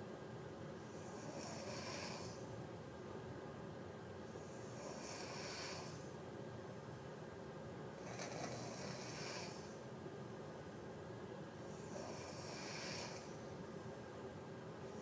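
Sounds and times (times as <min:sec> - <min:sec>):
breathy hiss: 0:00.8 - 0:02.5, 0:04.2 - 0:06.1, 0:08.0 - 0:09.8, 0:11.6 - 0:13.4
people snoring: 0:01.0 - 0:02.4, 0:04.7 - 0:06.0, 0:08.0 - 0:09.7, 0:11.8 - 0:13.3.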